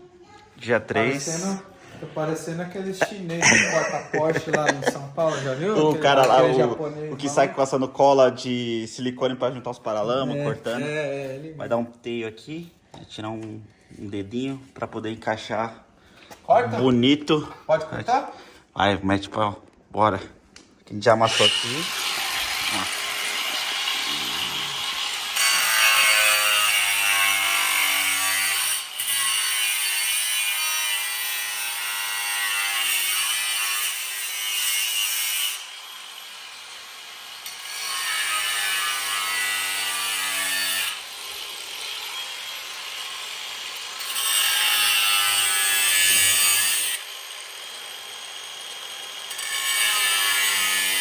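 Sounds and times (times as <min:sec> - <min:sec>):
power tool cutting metal: 0:21.2 - 0:51.0.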